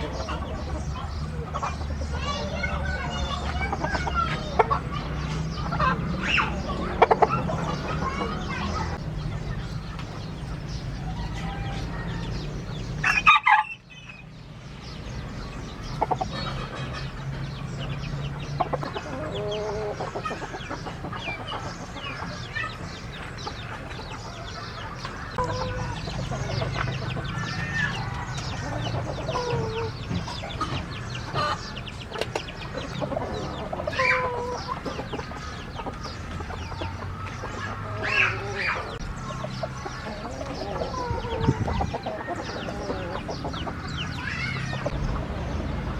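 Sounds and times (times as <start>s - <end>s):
chickens clucking: 0.0s - 45.9s
steady low hum: 41.0s - 45.9s.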